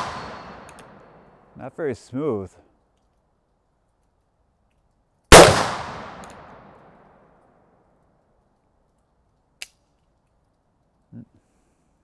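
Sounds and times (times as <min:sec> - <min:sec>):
revolver gunshot echoing: 0:00.0 - 0:01.0, 0:05.3 - 0:06.7.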